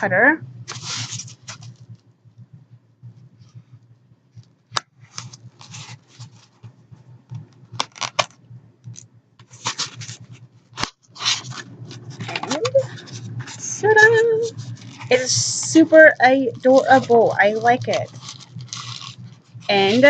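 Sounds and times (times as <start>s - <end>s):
packaging rustling: 0.7s - 1.9s, 5.0s - 6.7s, 7.7s - 8.4s, 9.4s - 20.0s.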